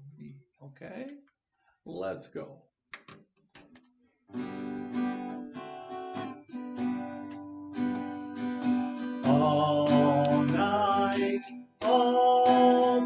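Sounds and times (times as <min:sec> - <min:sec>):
acoustic guitar strumming: 0:04.3 - 0:13.0.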